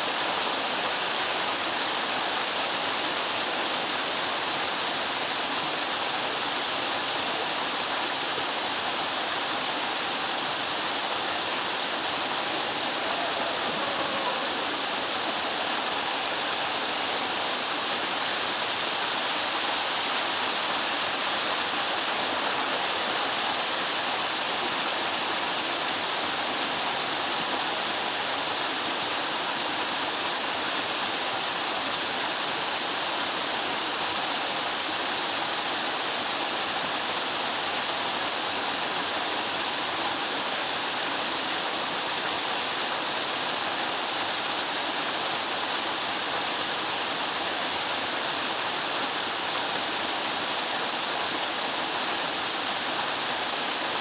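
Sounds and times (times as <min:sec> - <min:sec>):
waterfall pouring: 0:10.1 - 0:24.0.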